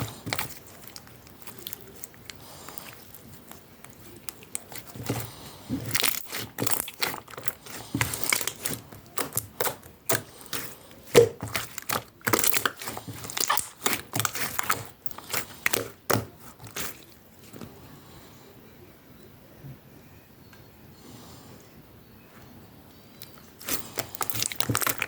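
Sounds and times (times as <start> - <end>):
slime clicking and popping: 0.0 - 17.0, 23.2 - 25.0.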